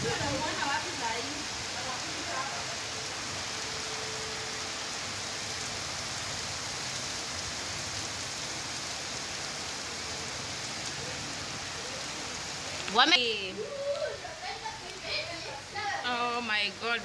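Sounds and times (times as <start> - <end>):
heavy rain on hard surfaces: 0.0 - 17.0.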